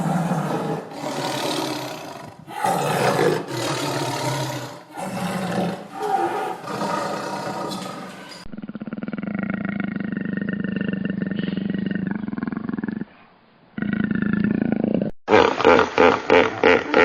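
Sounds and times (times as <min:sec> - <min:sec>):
big cat roaring: 0:00.0 - 0:13.1.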